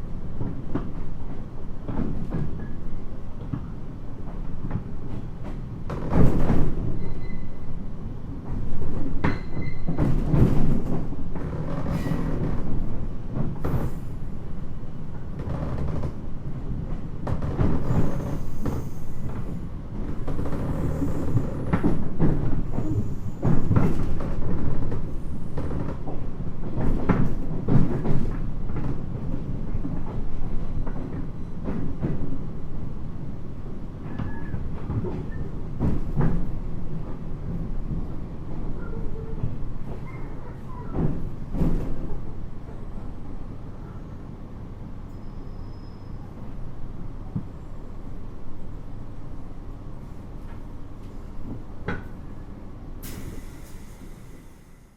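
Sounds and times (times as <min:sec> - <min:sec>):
train cabin rumble: 0:00.0 - 0:54.9
faint high squeal: 0:07.0 - 0:07.7, 0:09.3 - 0:10.0, 0:45.1 - 0:46.5.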